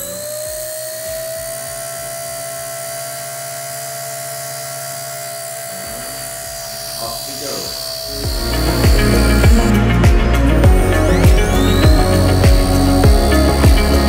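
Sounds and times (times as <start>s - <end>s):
model helicopter motor whine: 0.0s - 14.0s.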